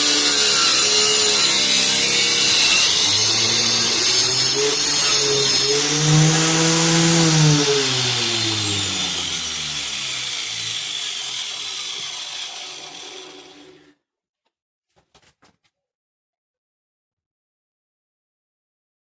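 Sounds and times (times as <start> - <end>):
angle grinder whine spinning down: 0.0 - 13.9.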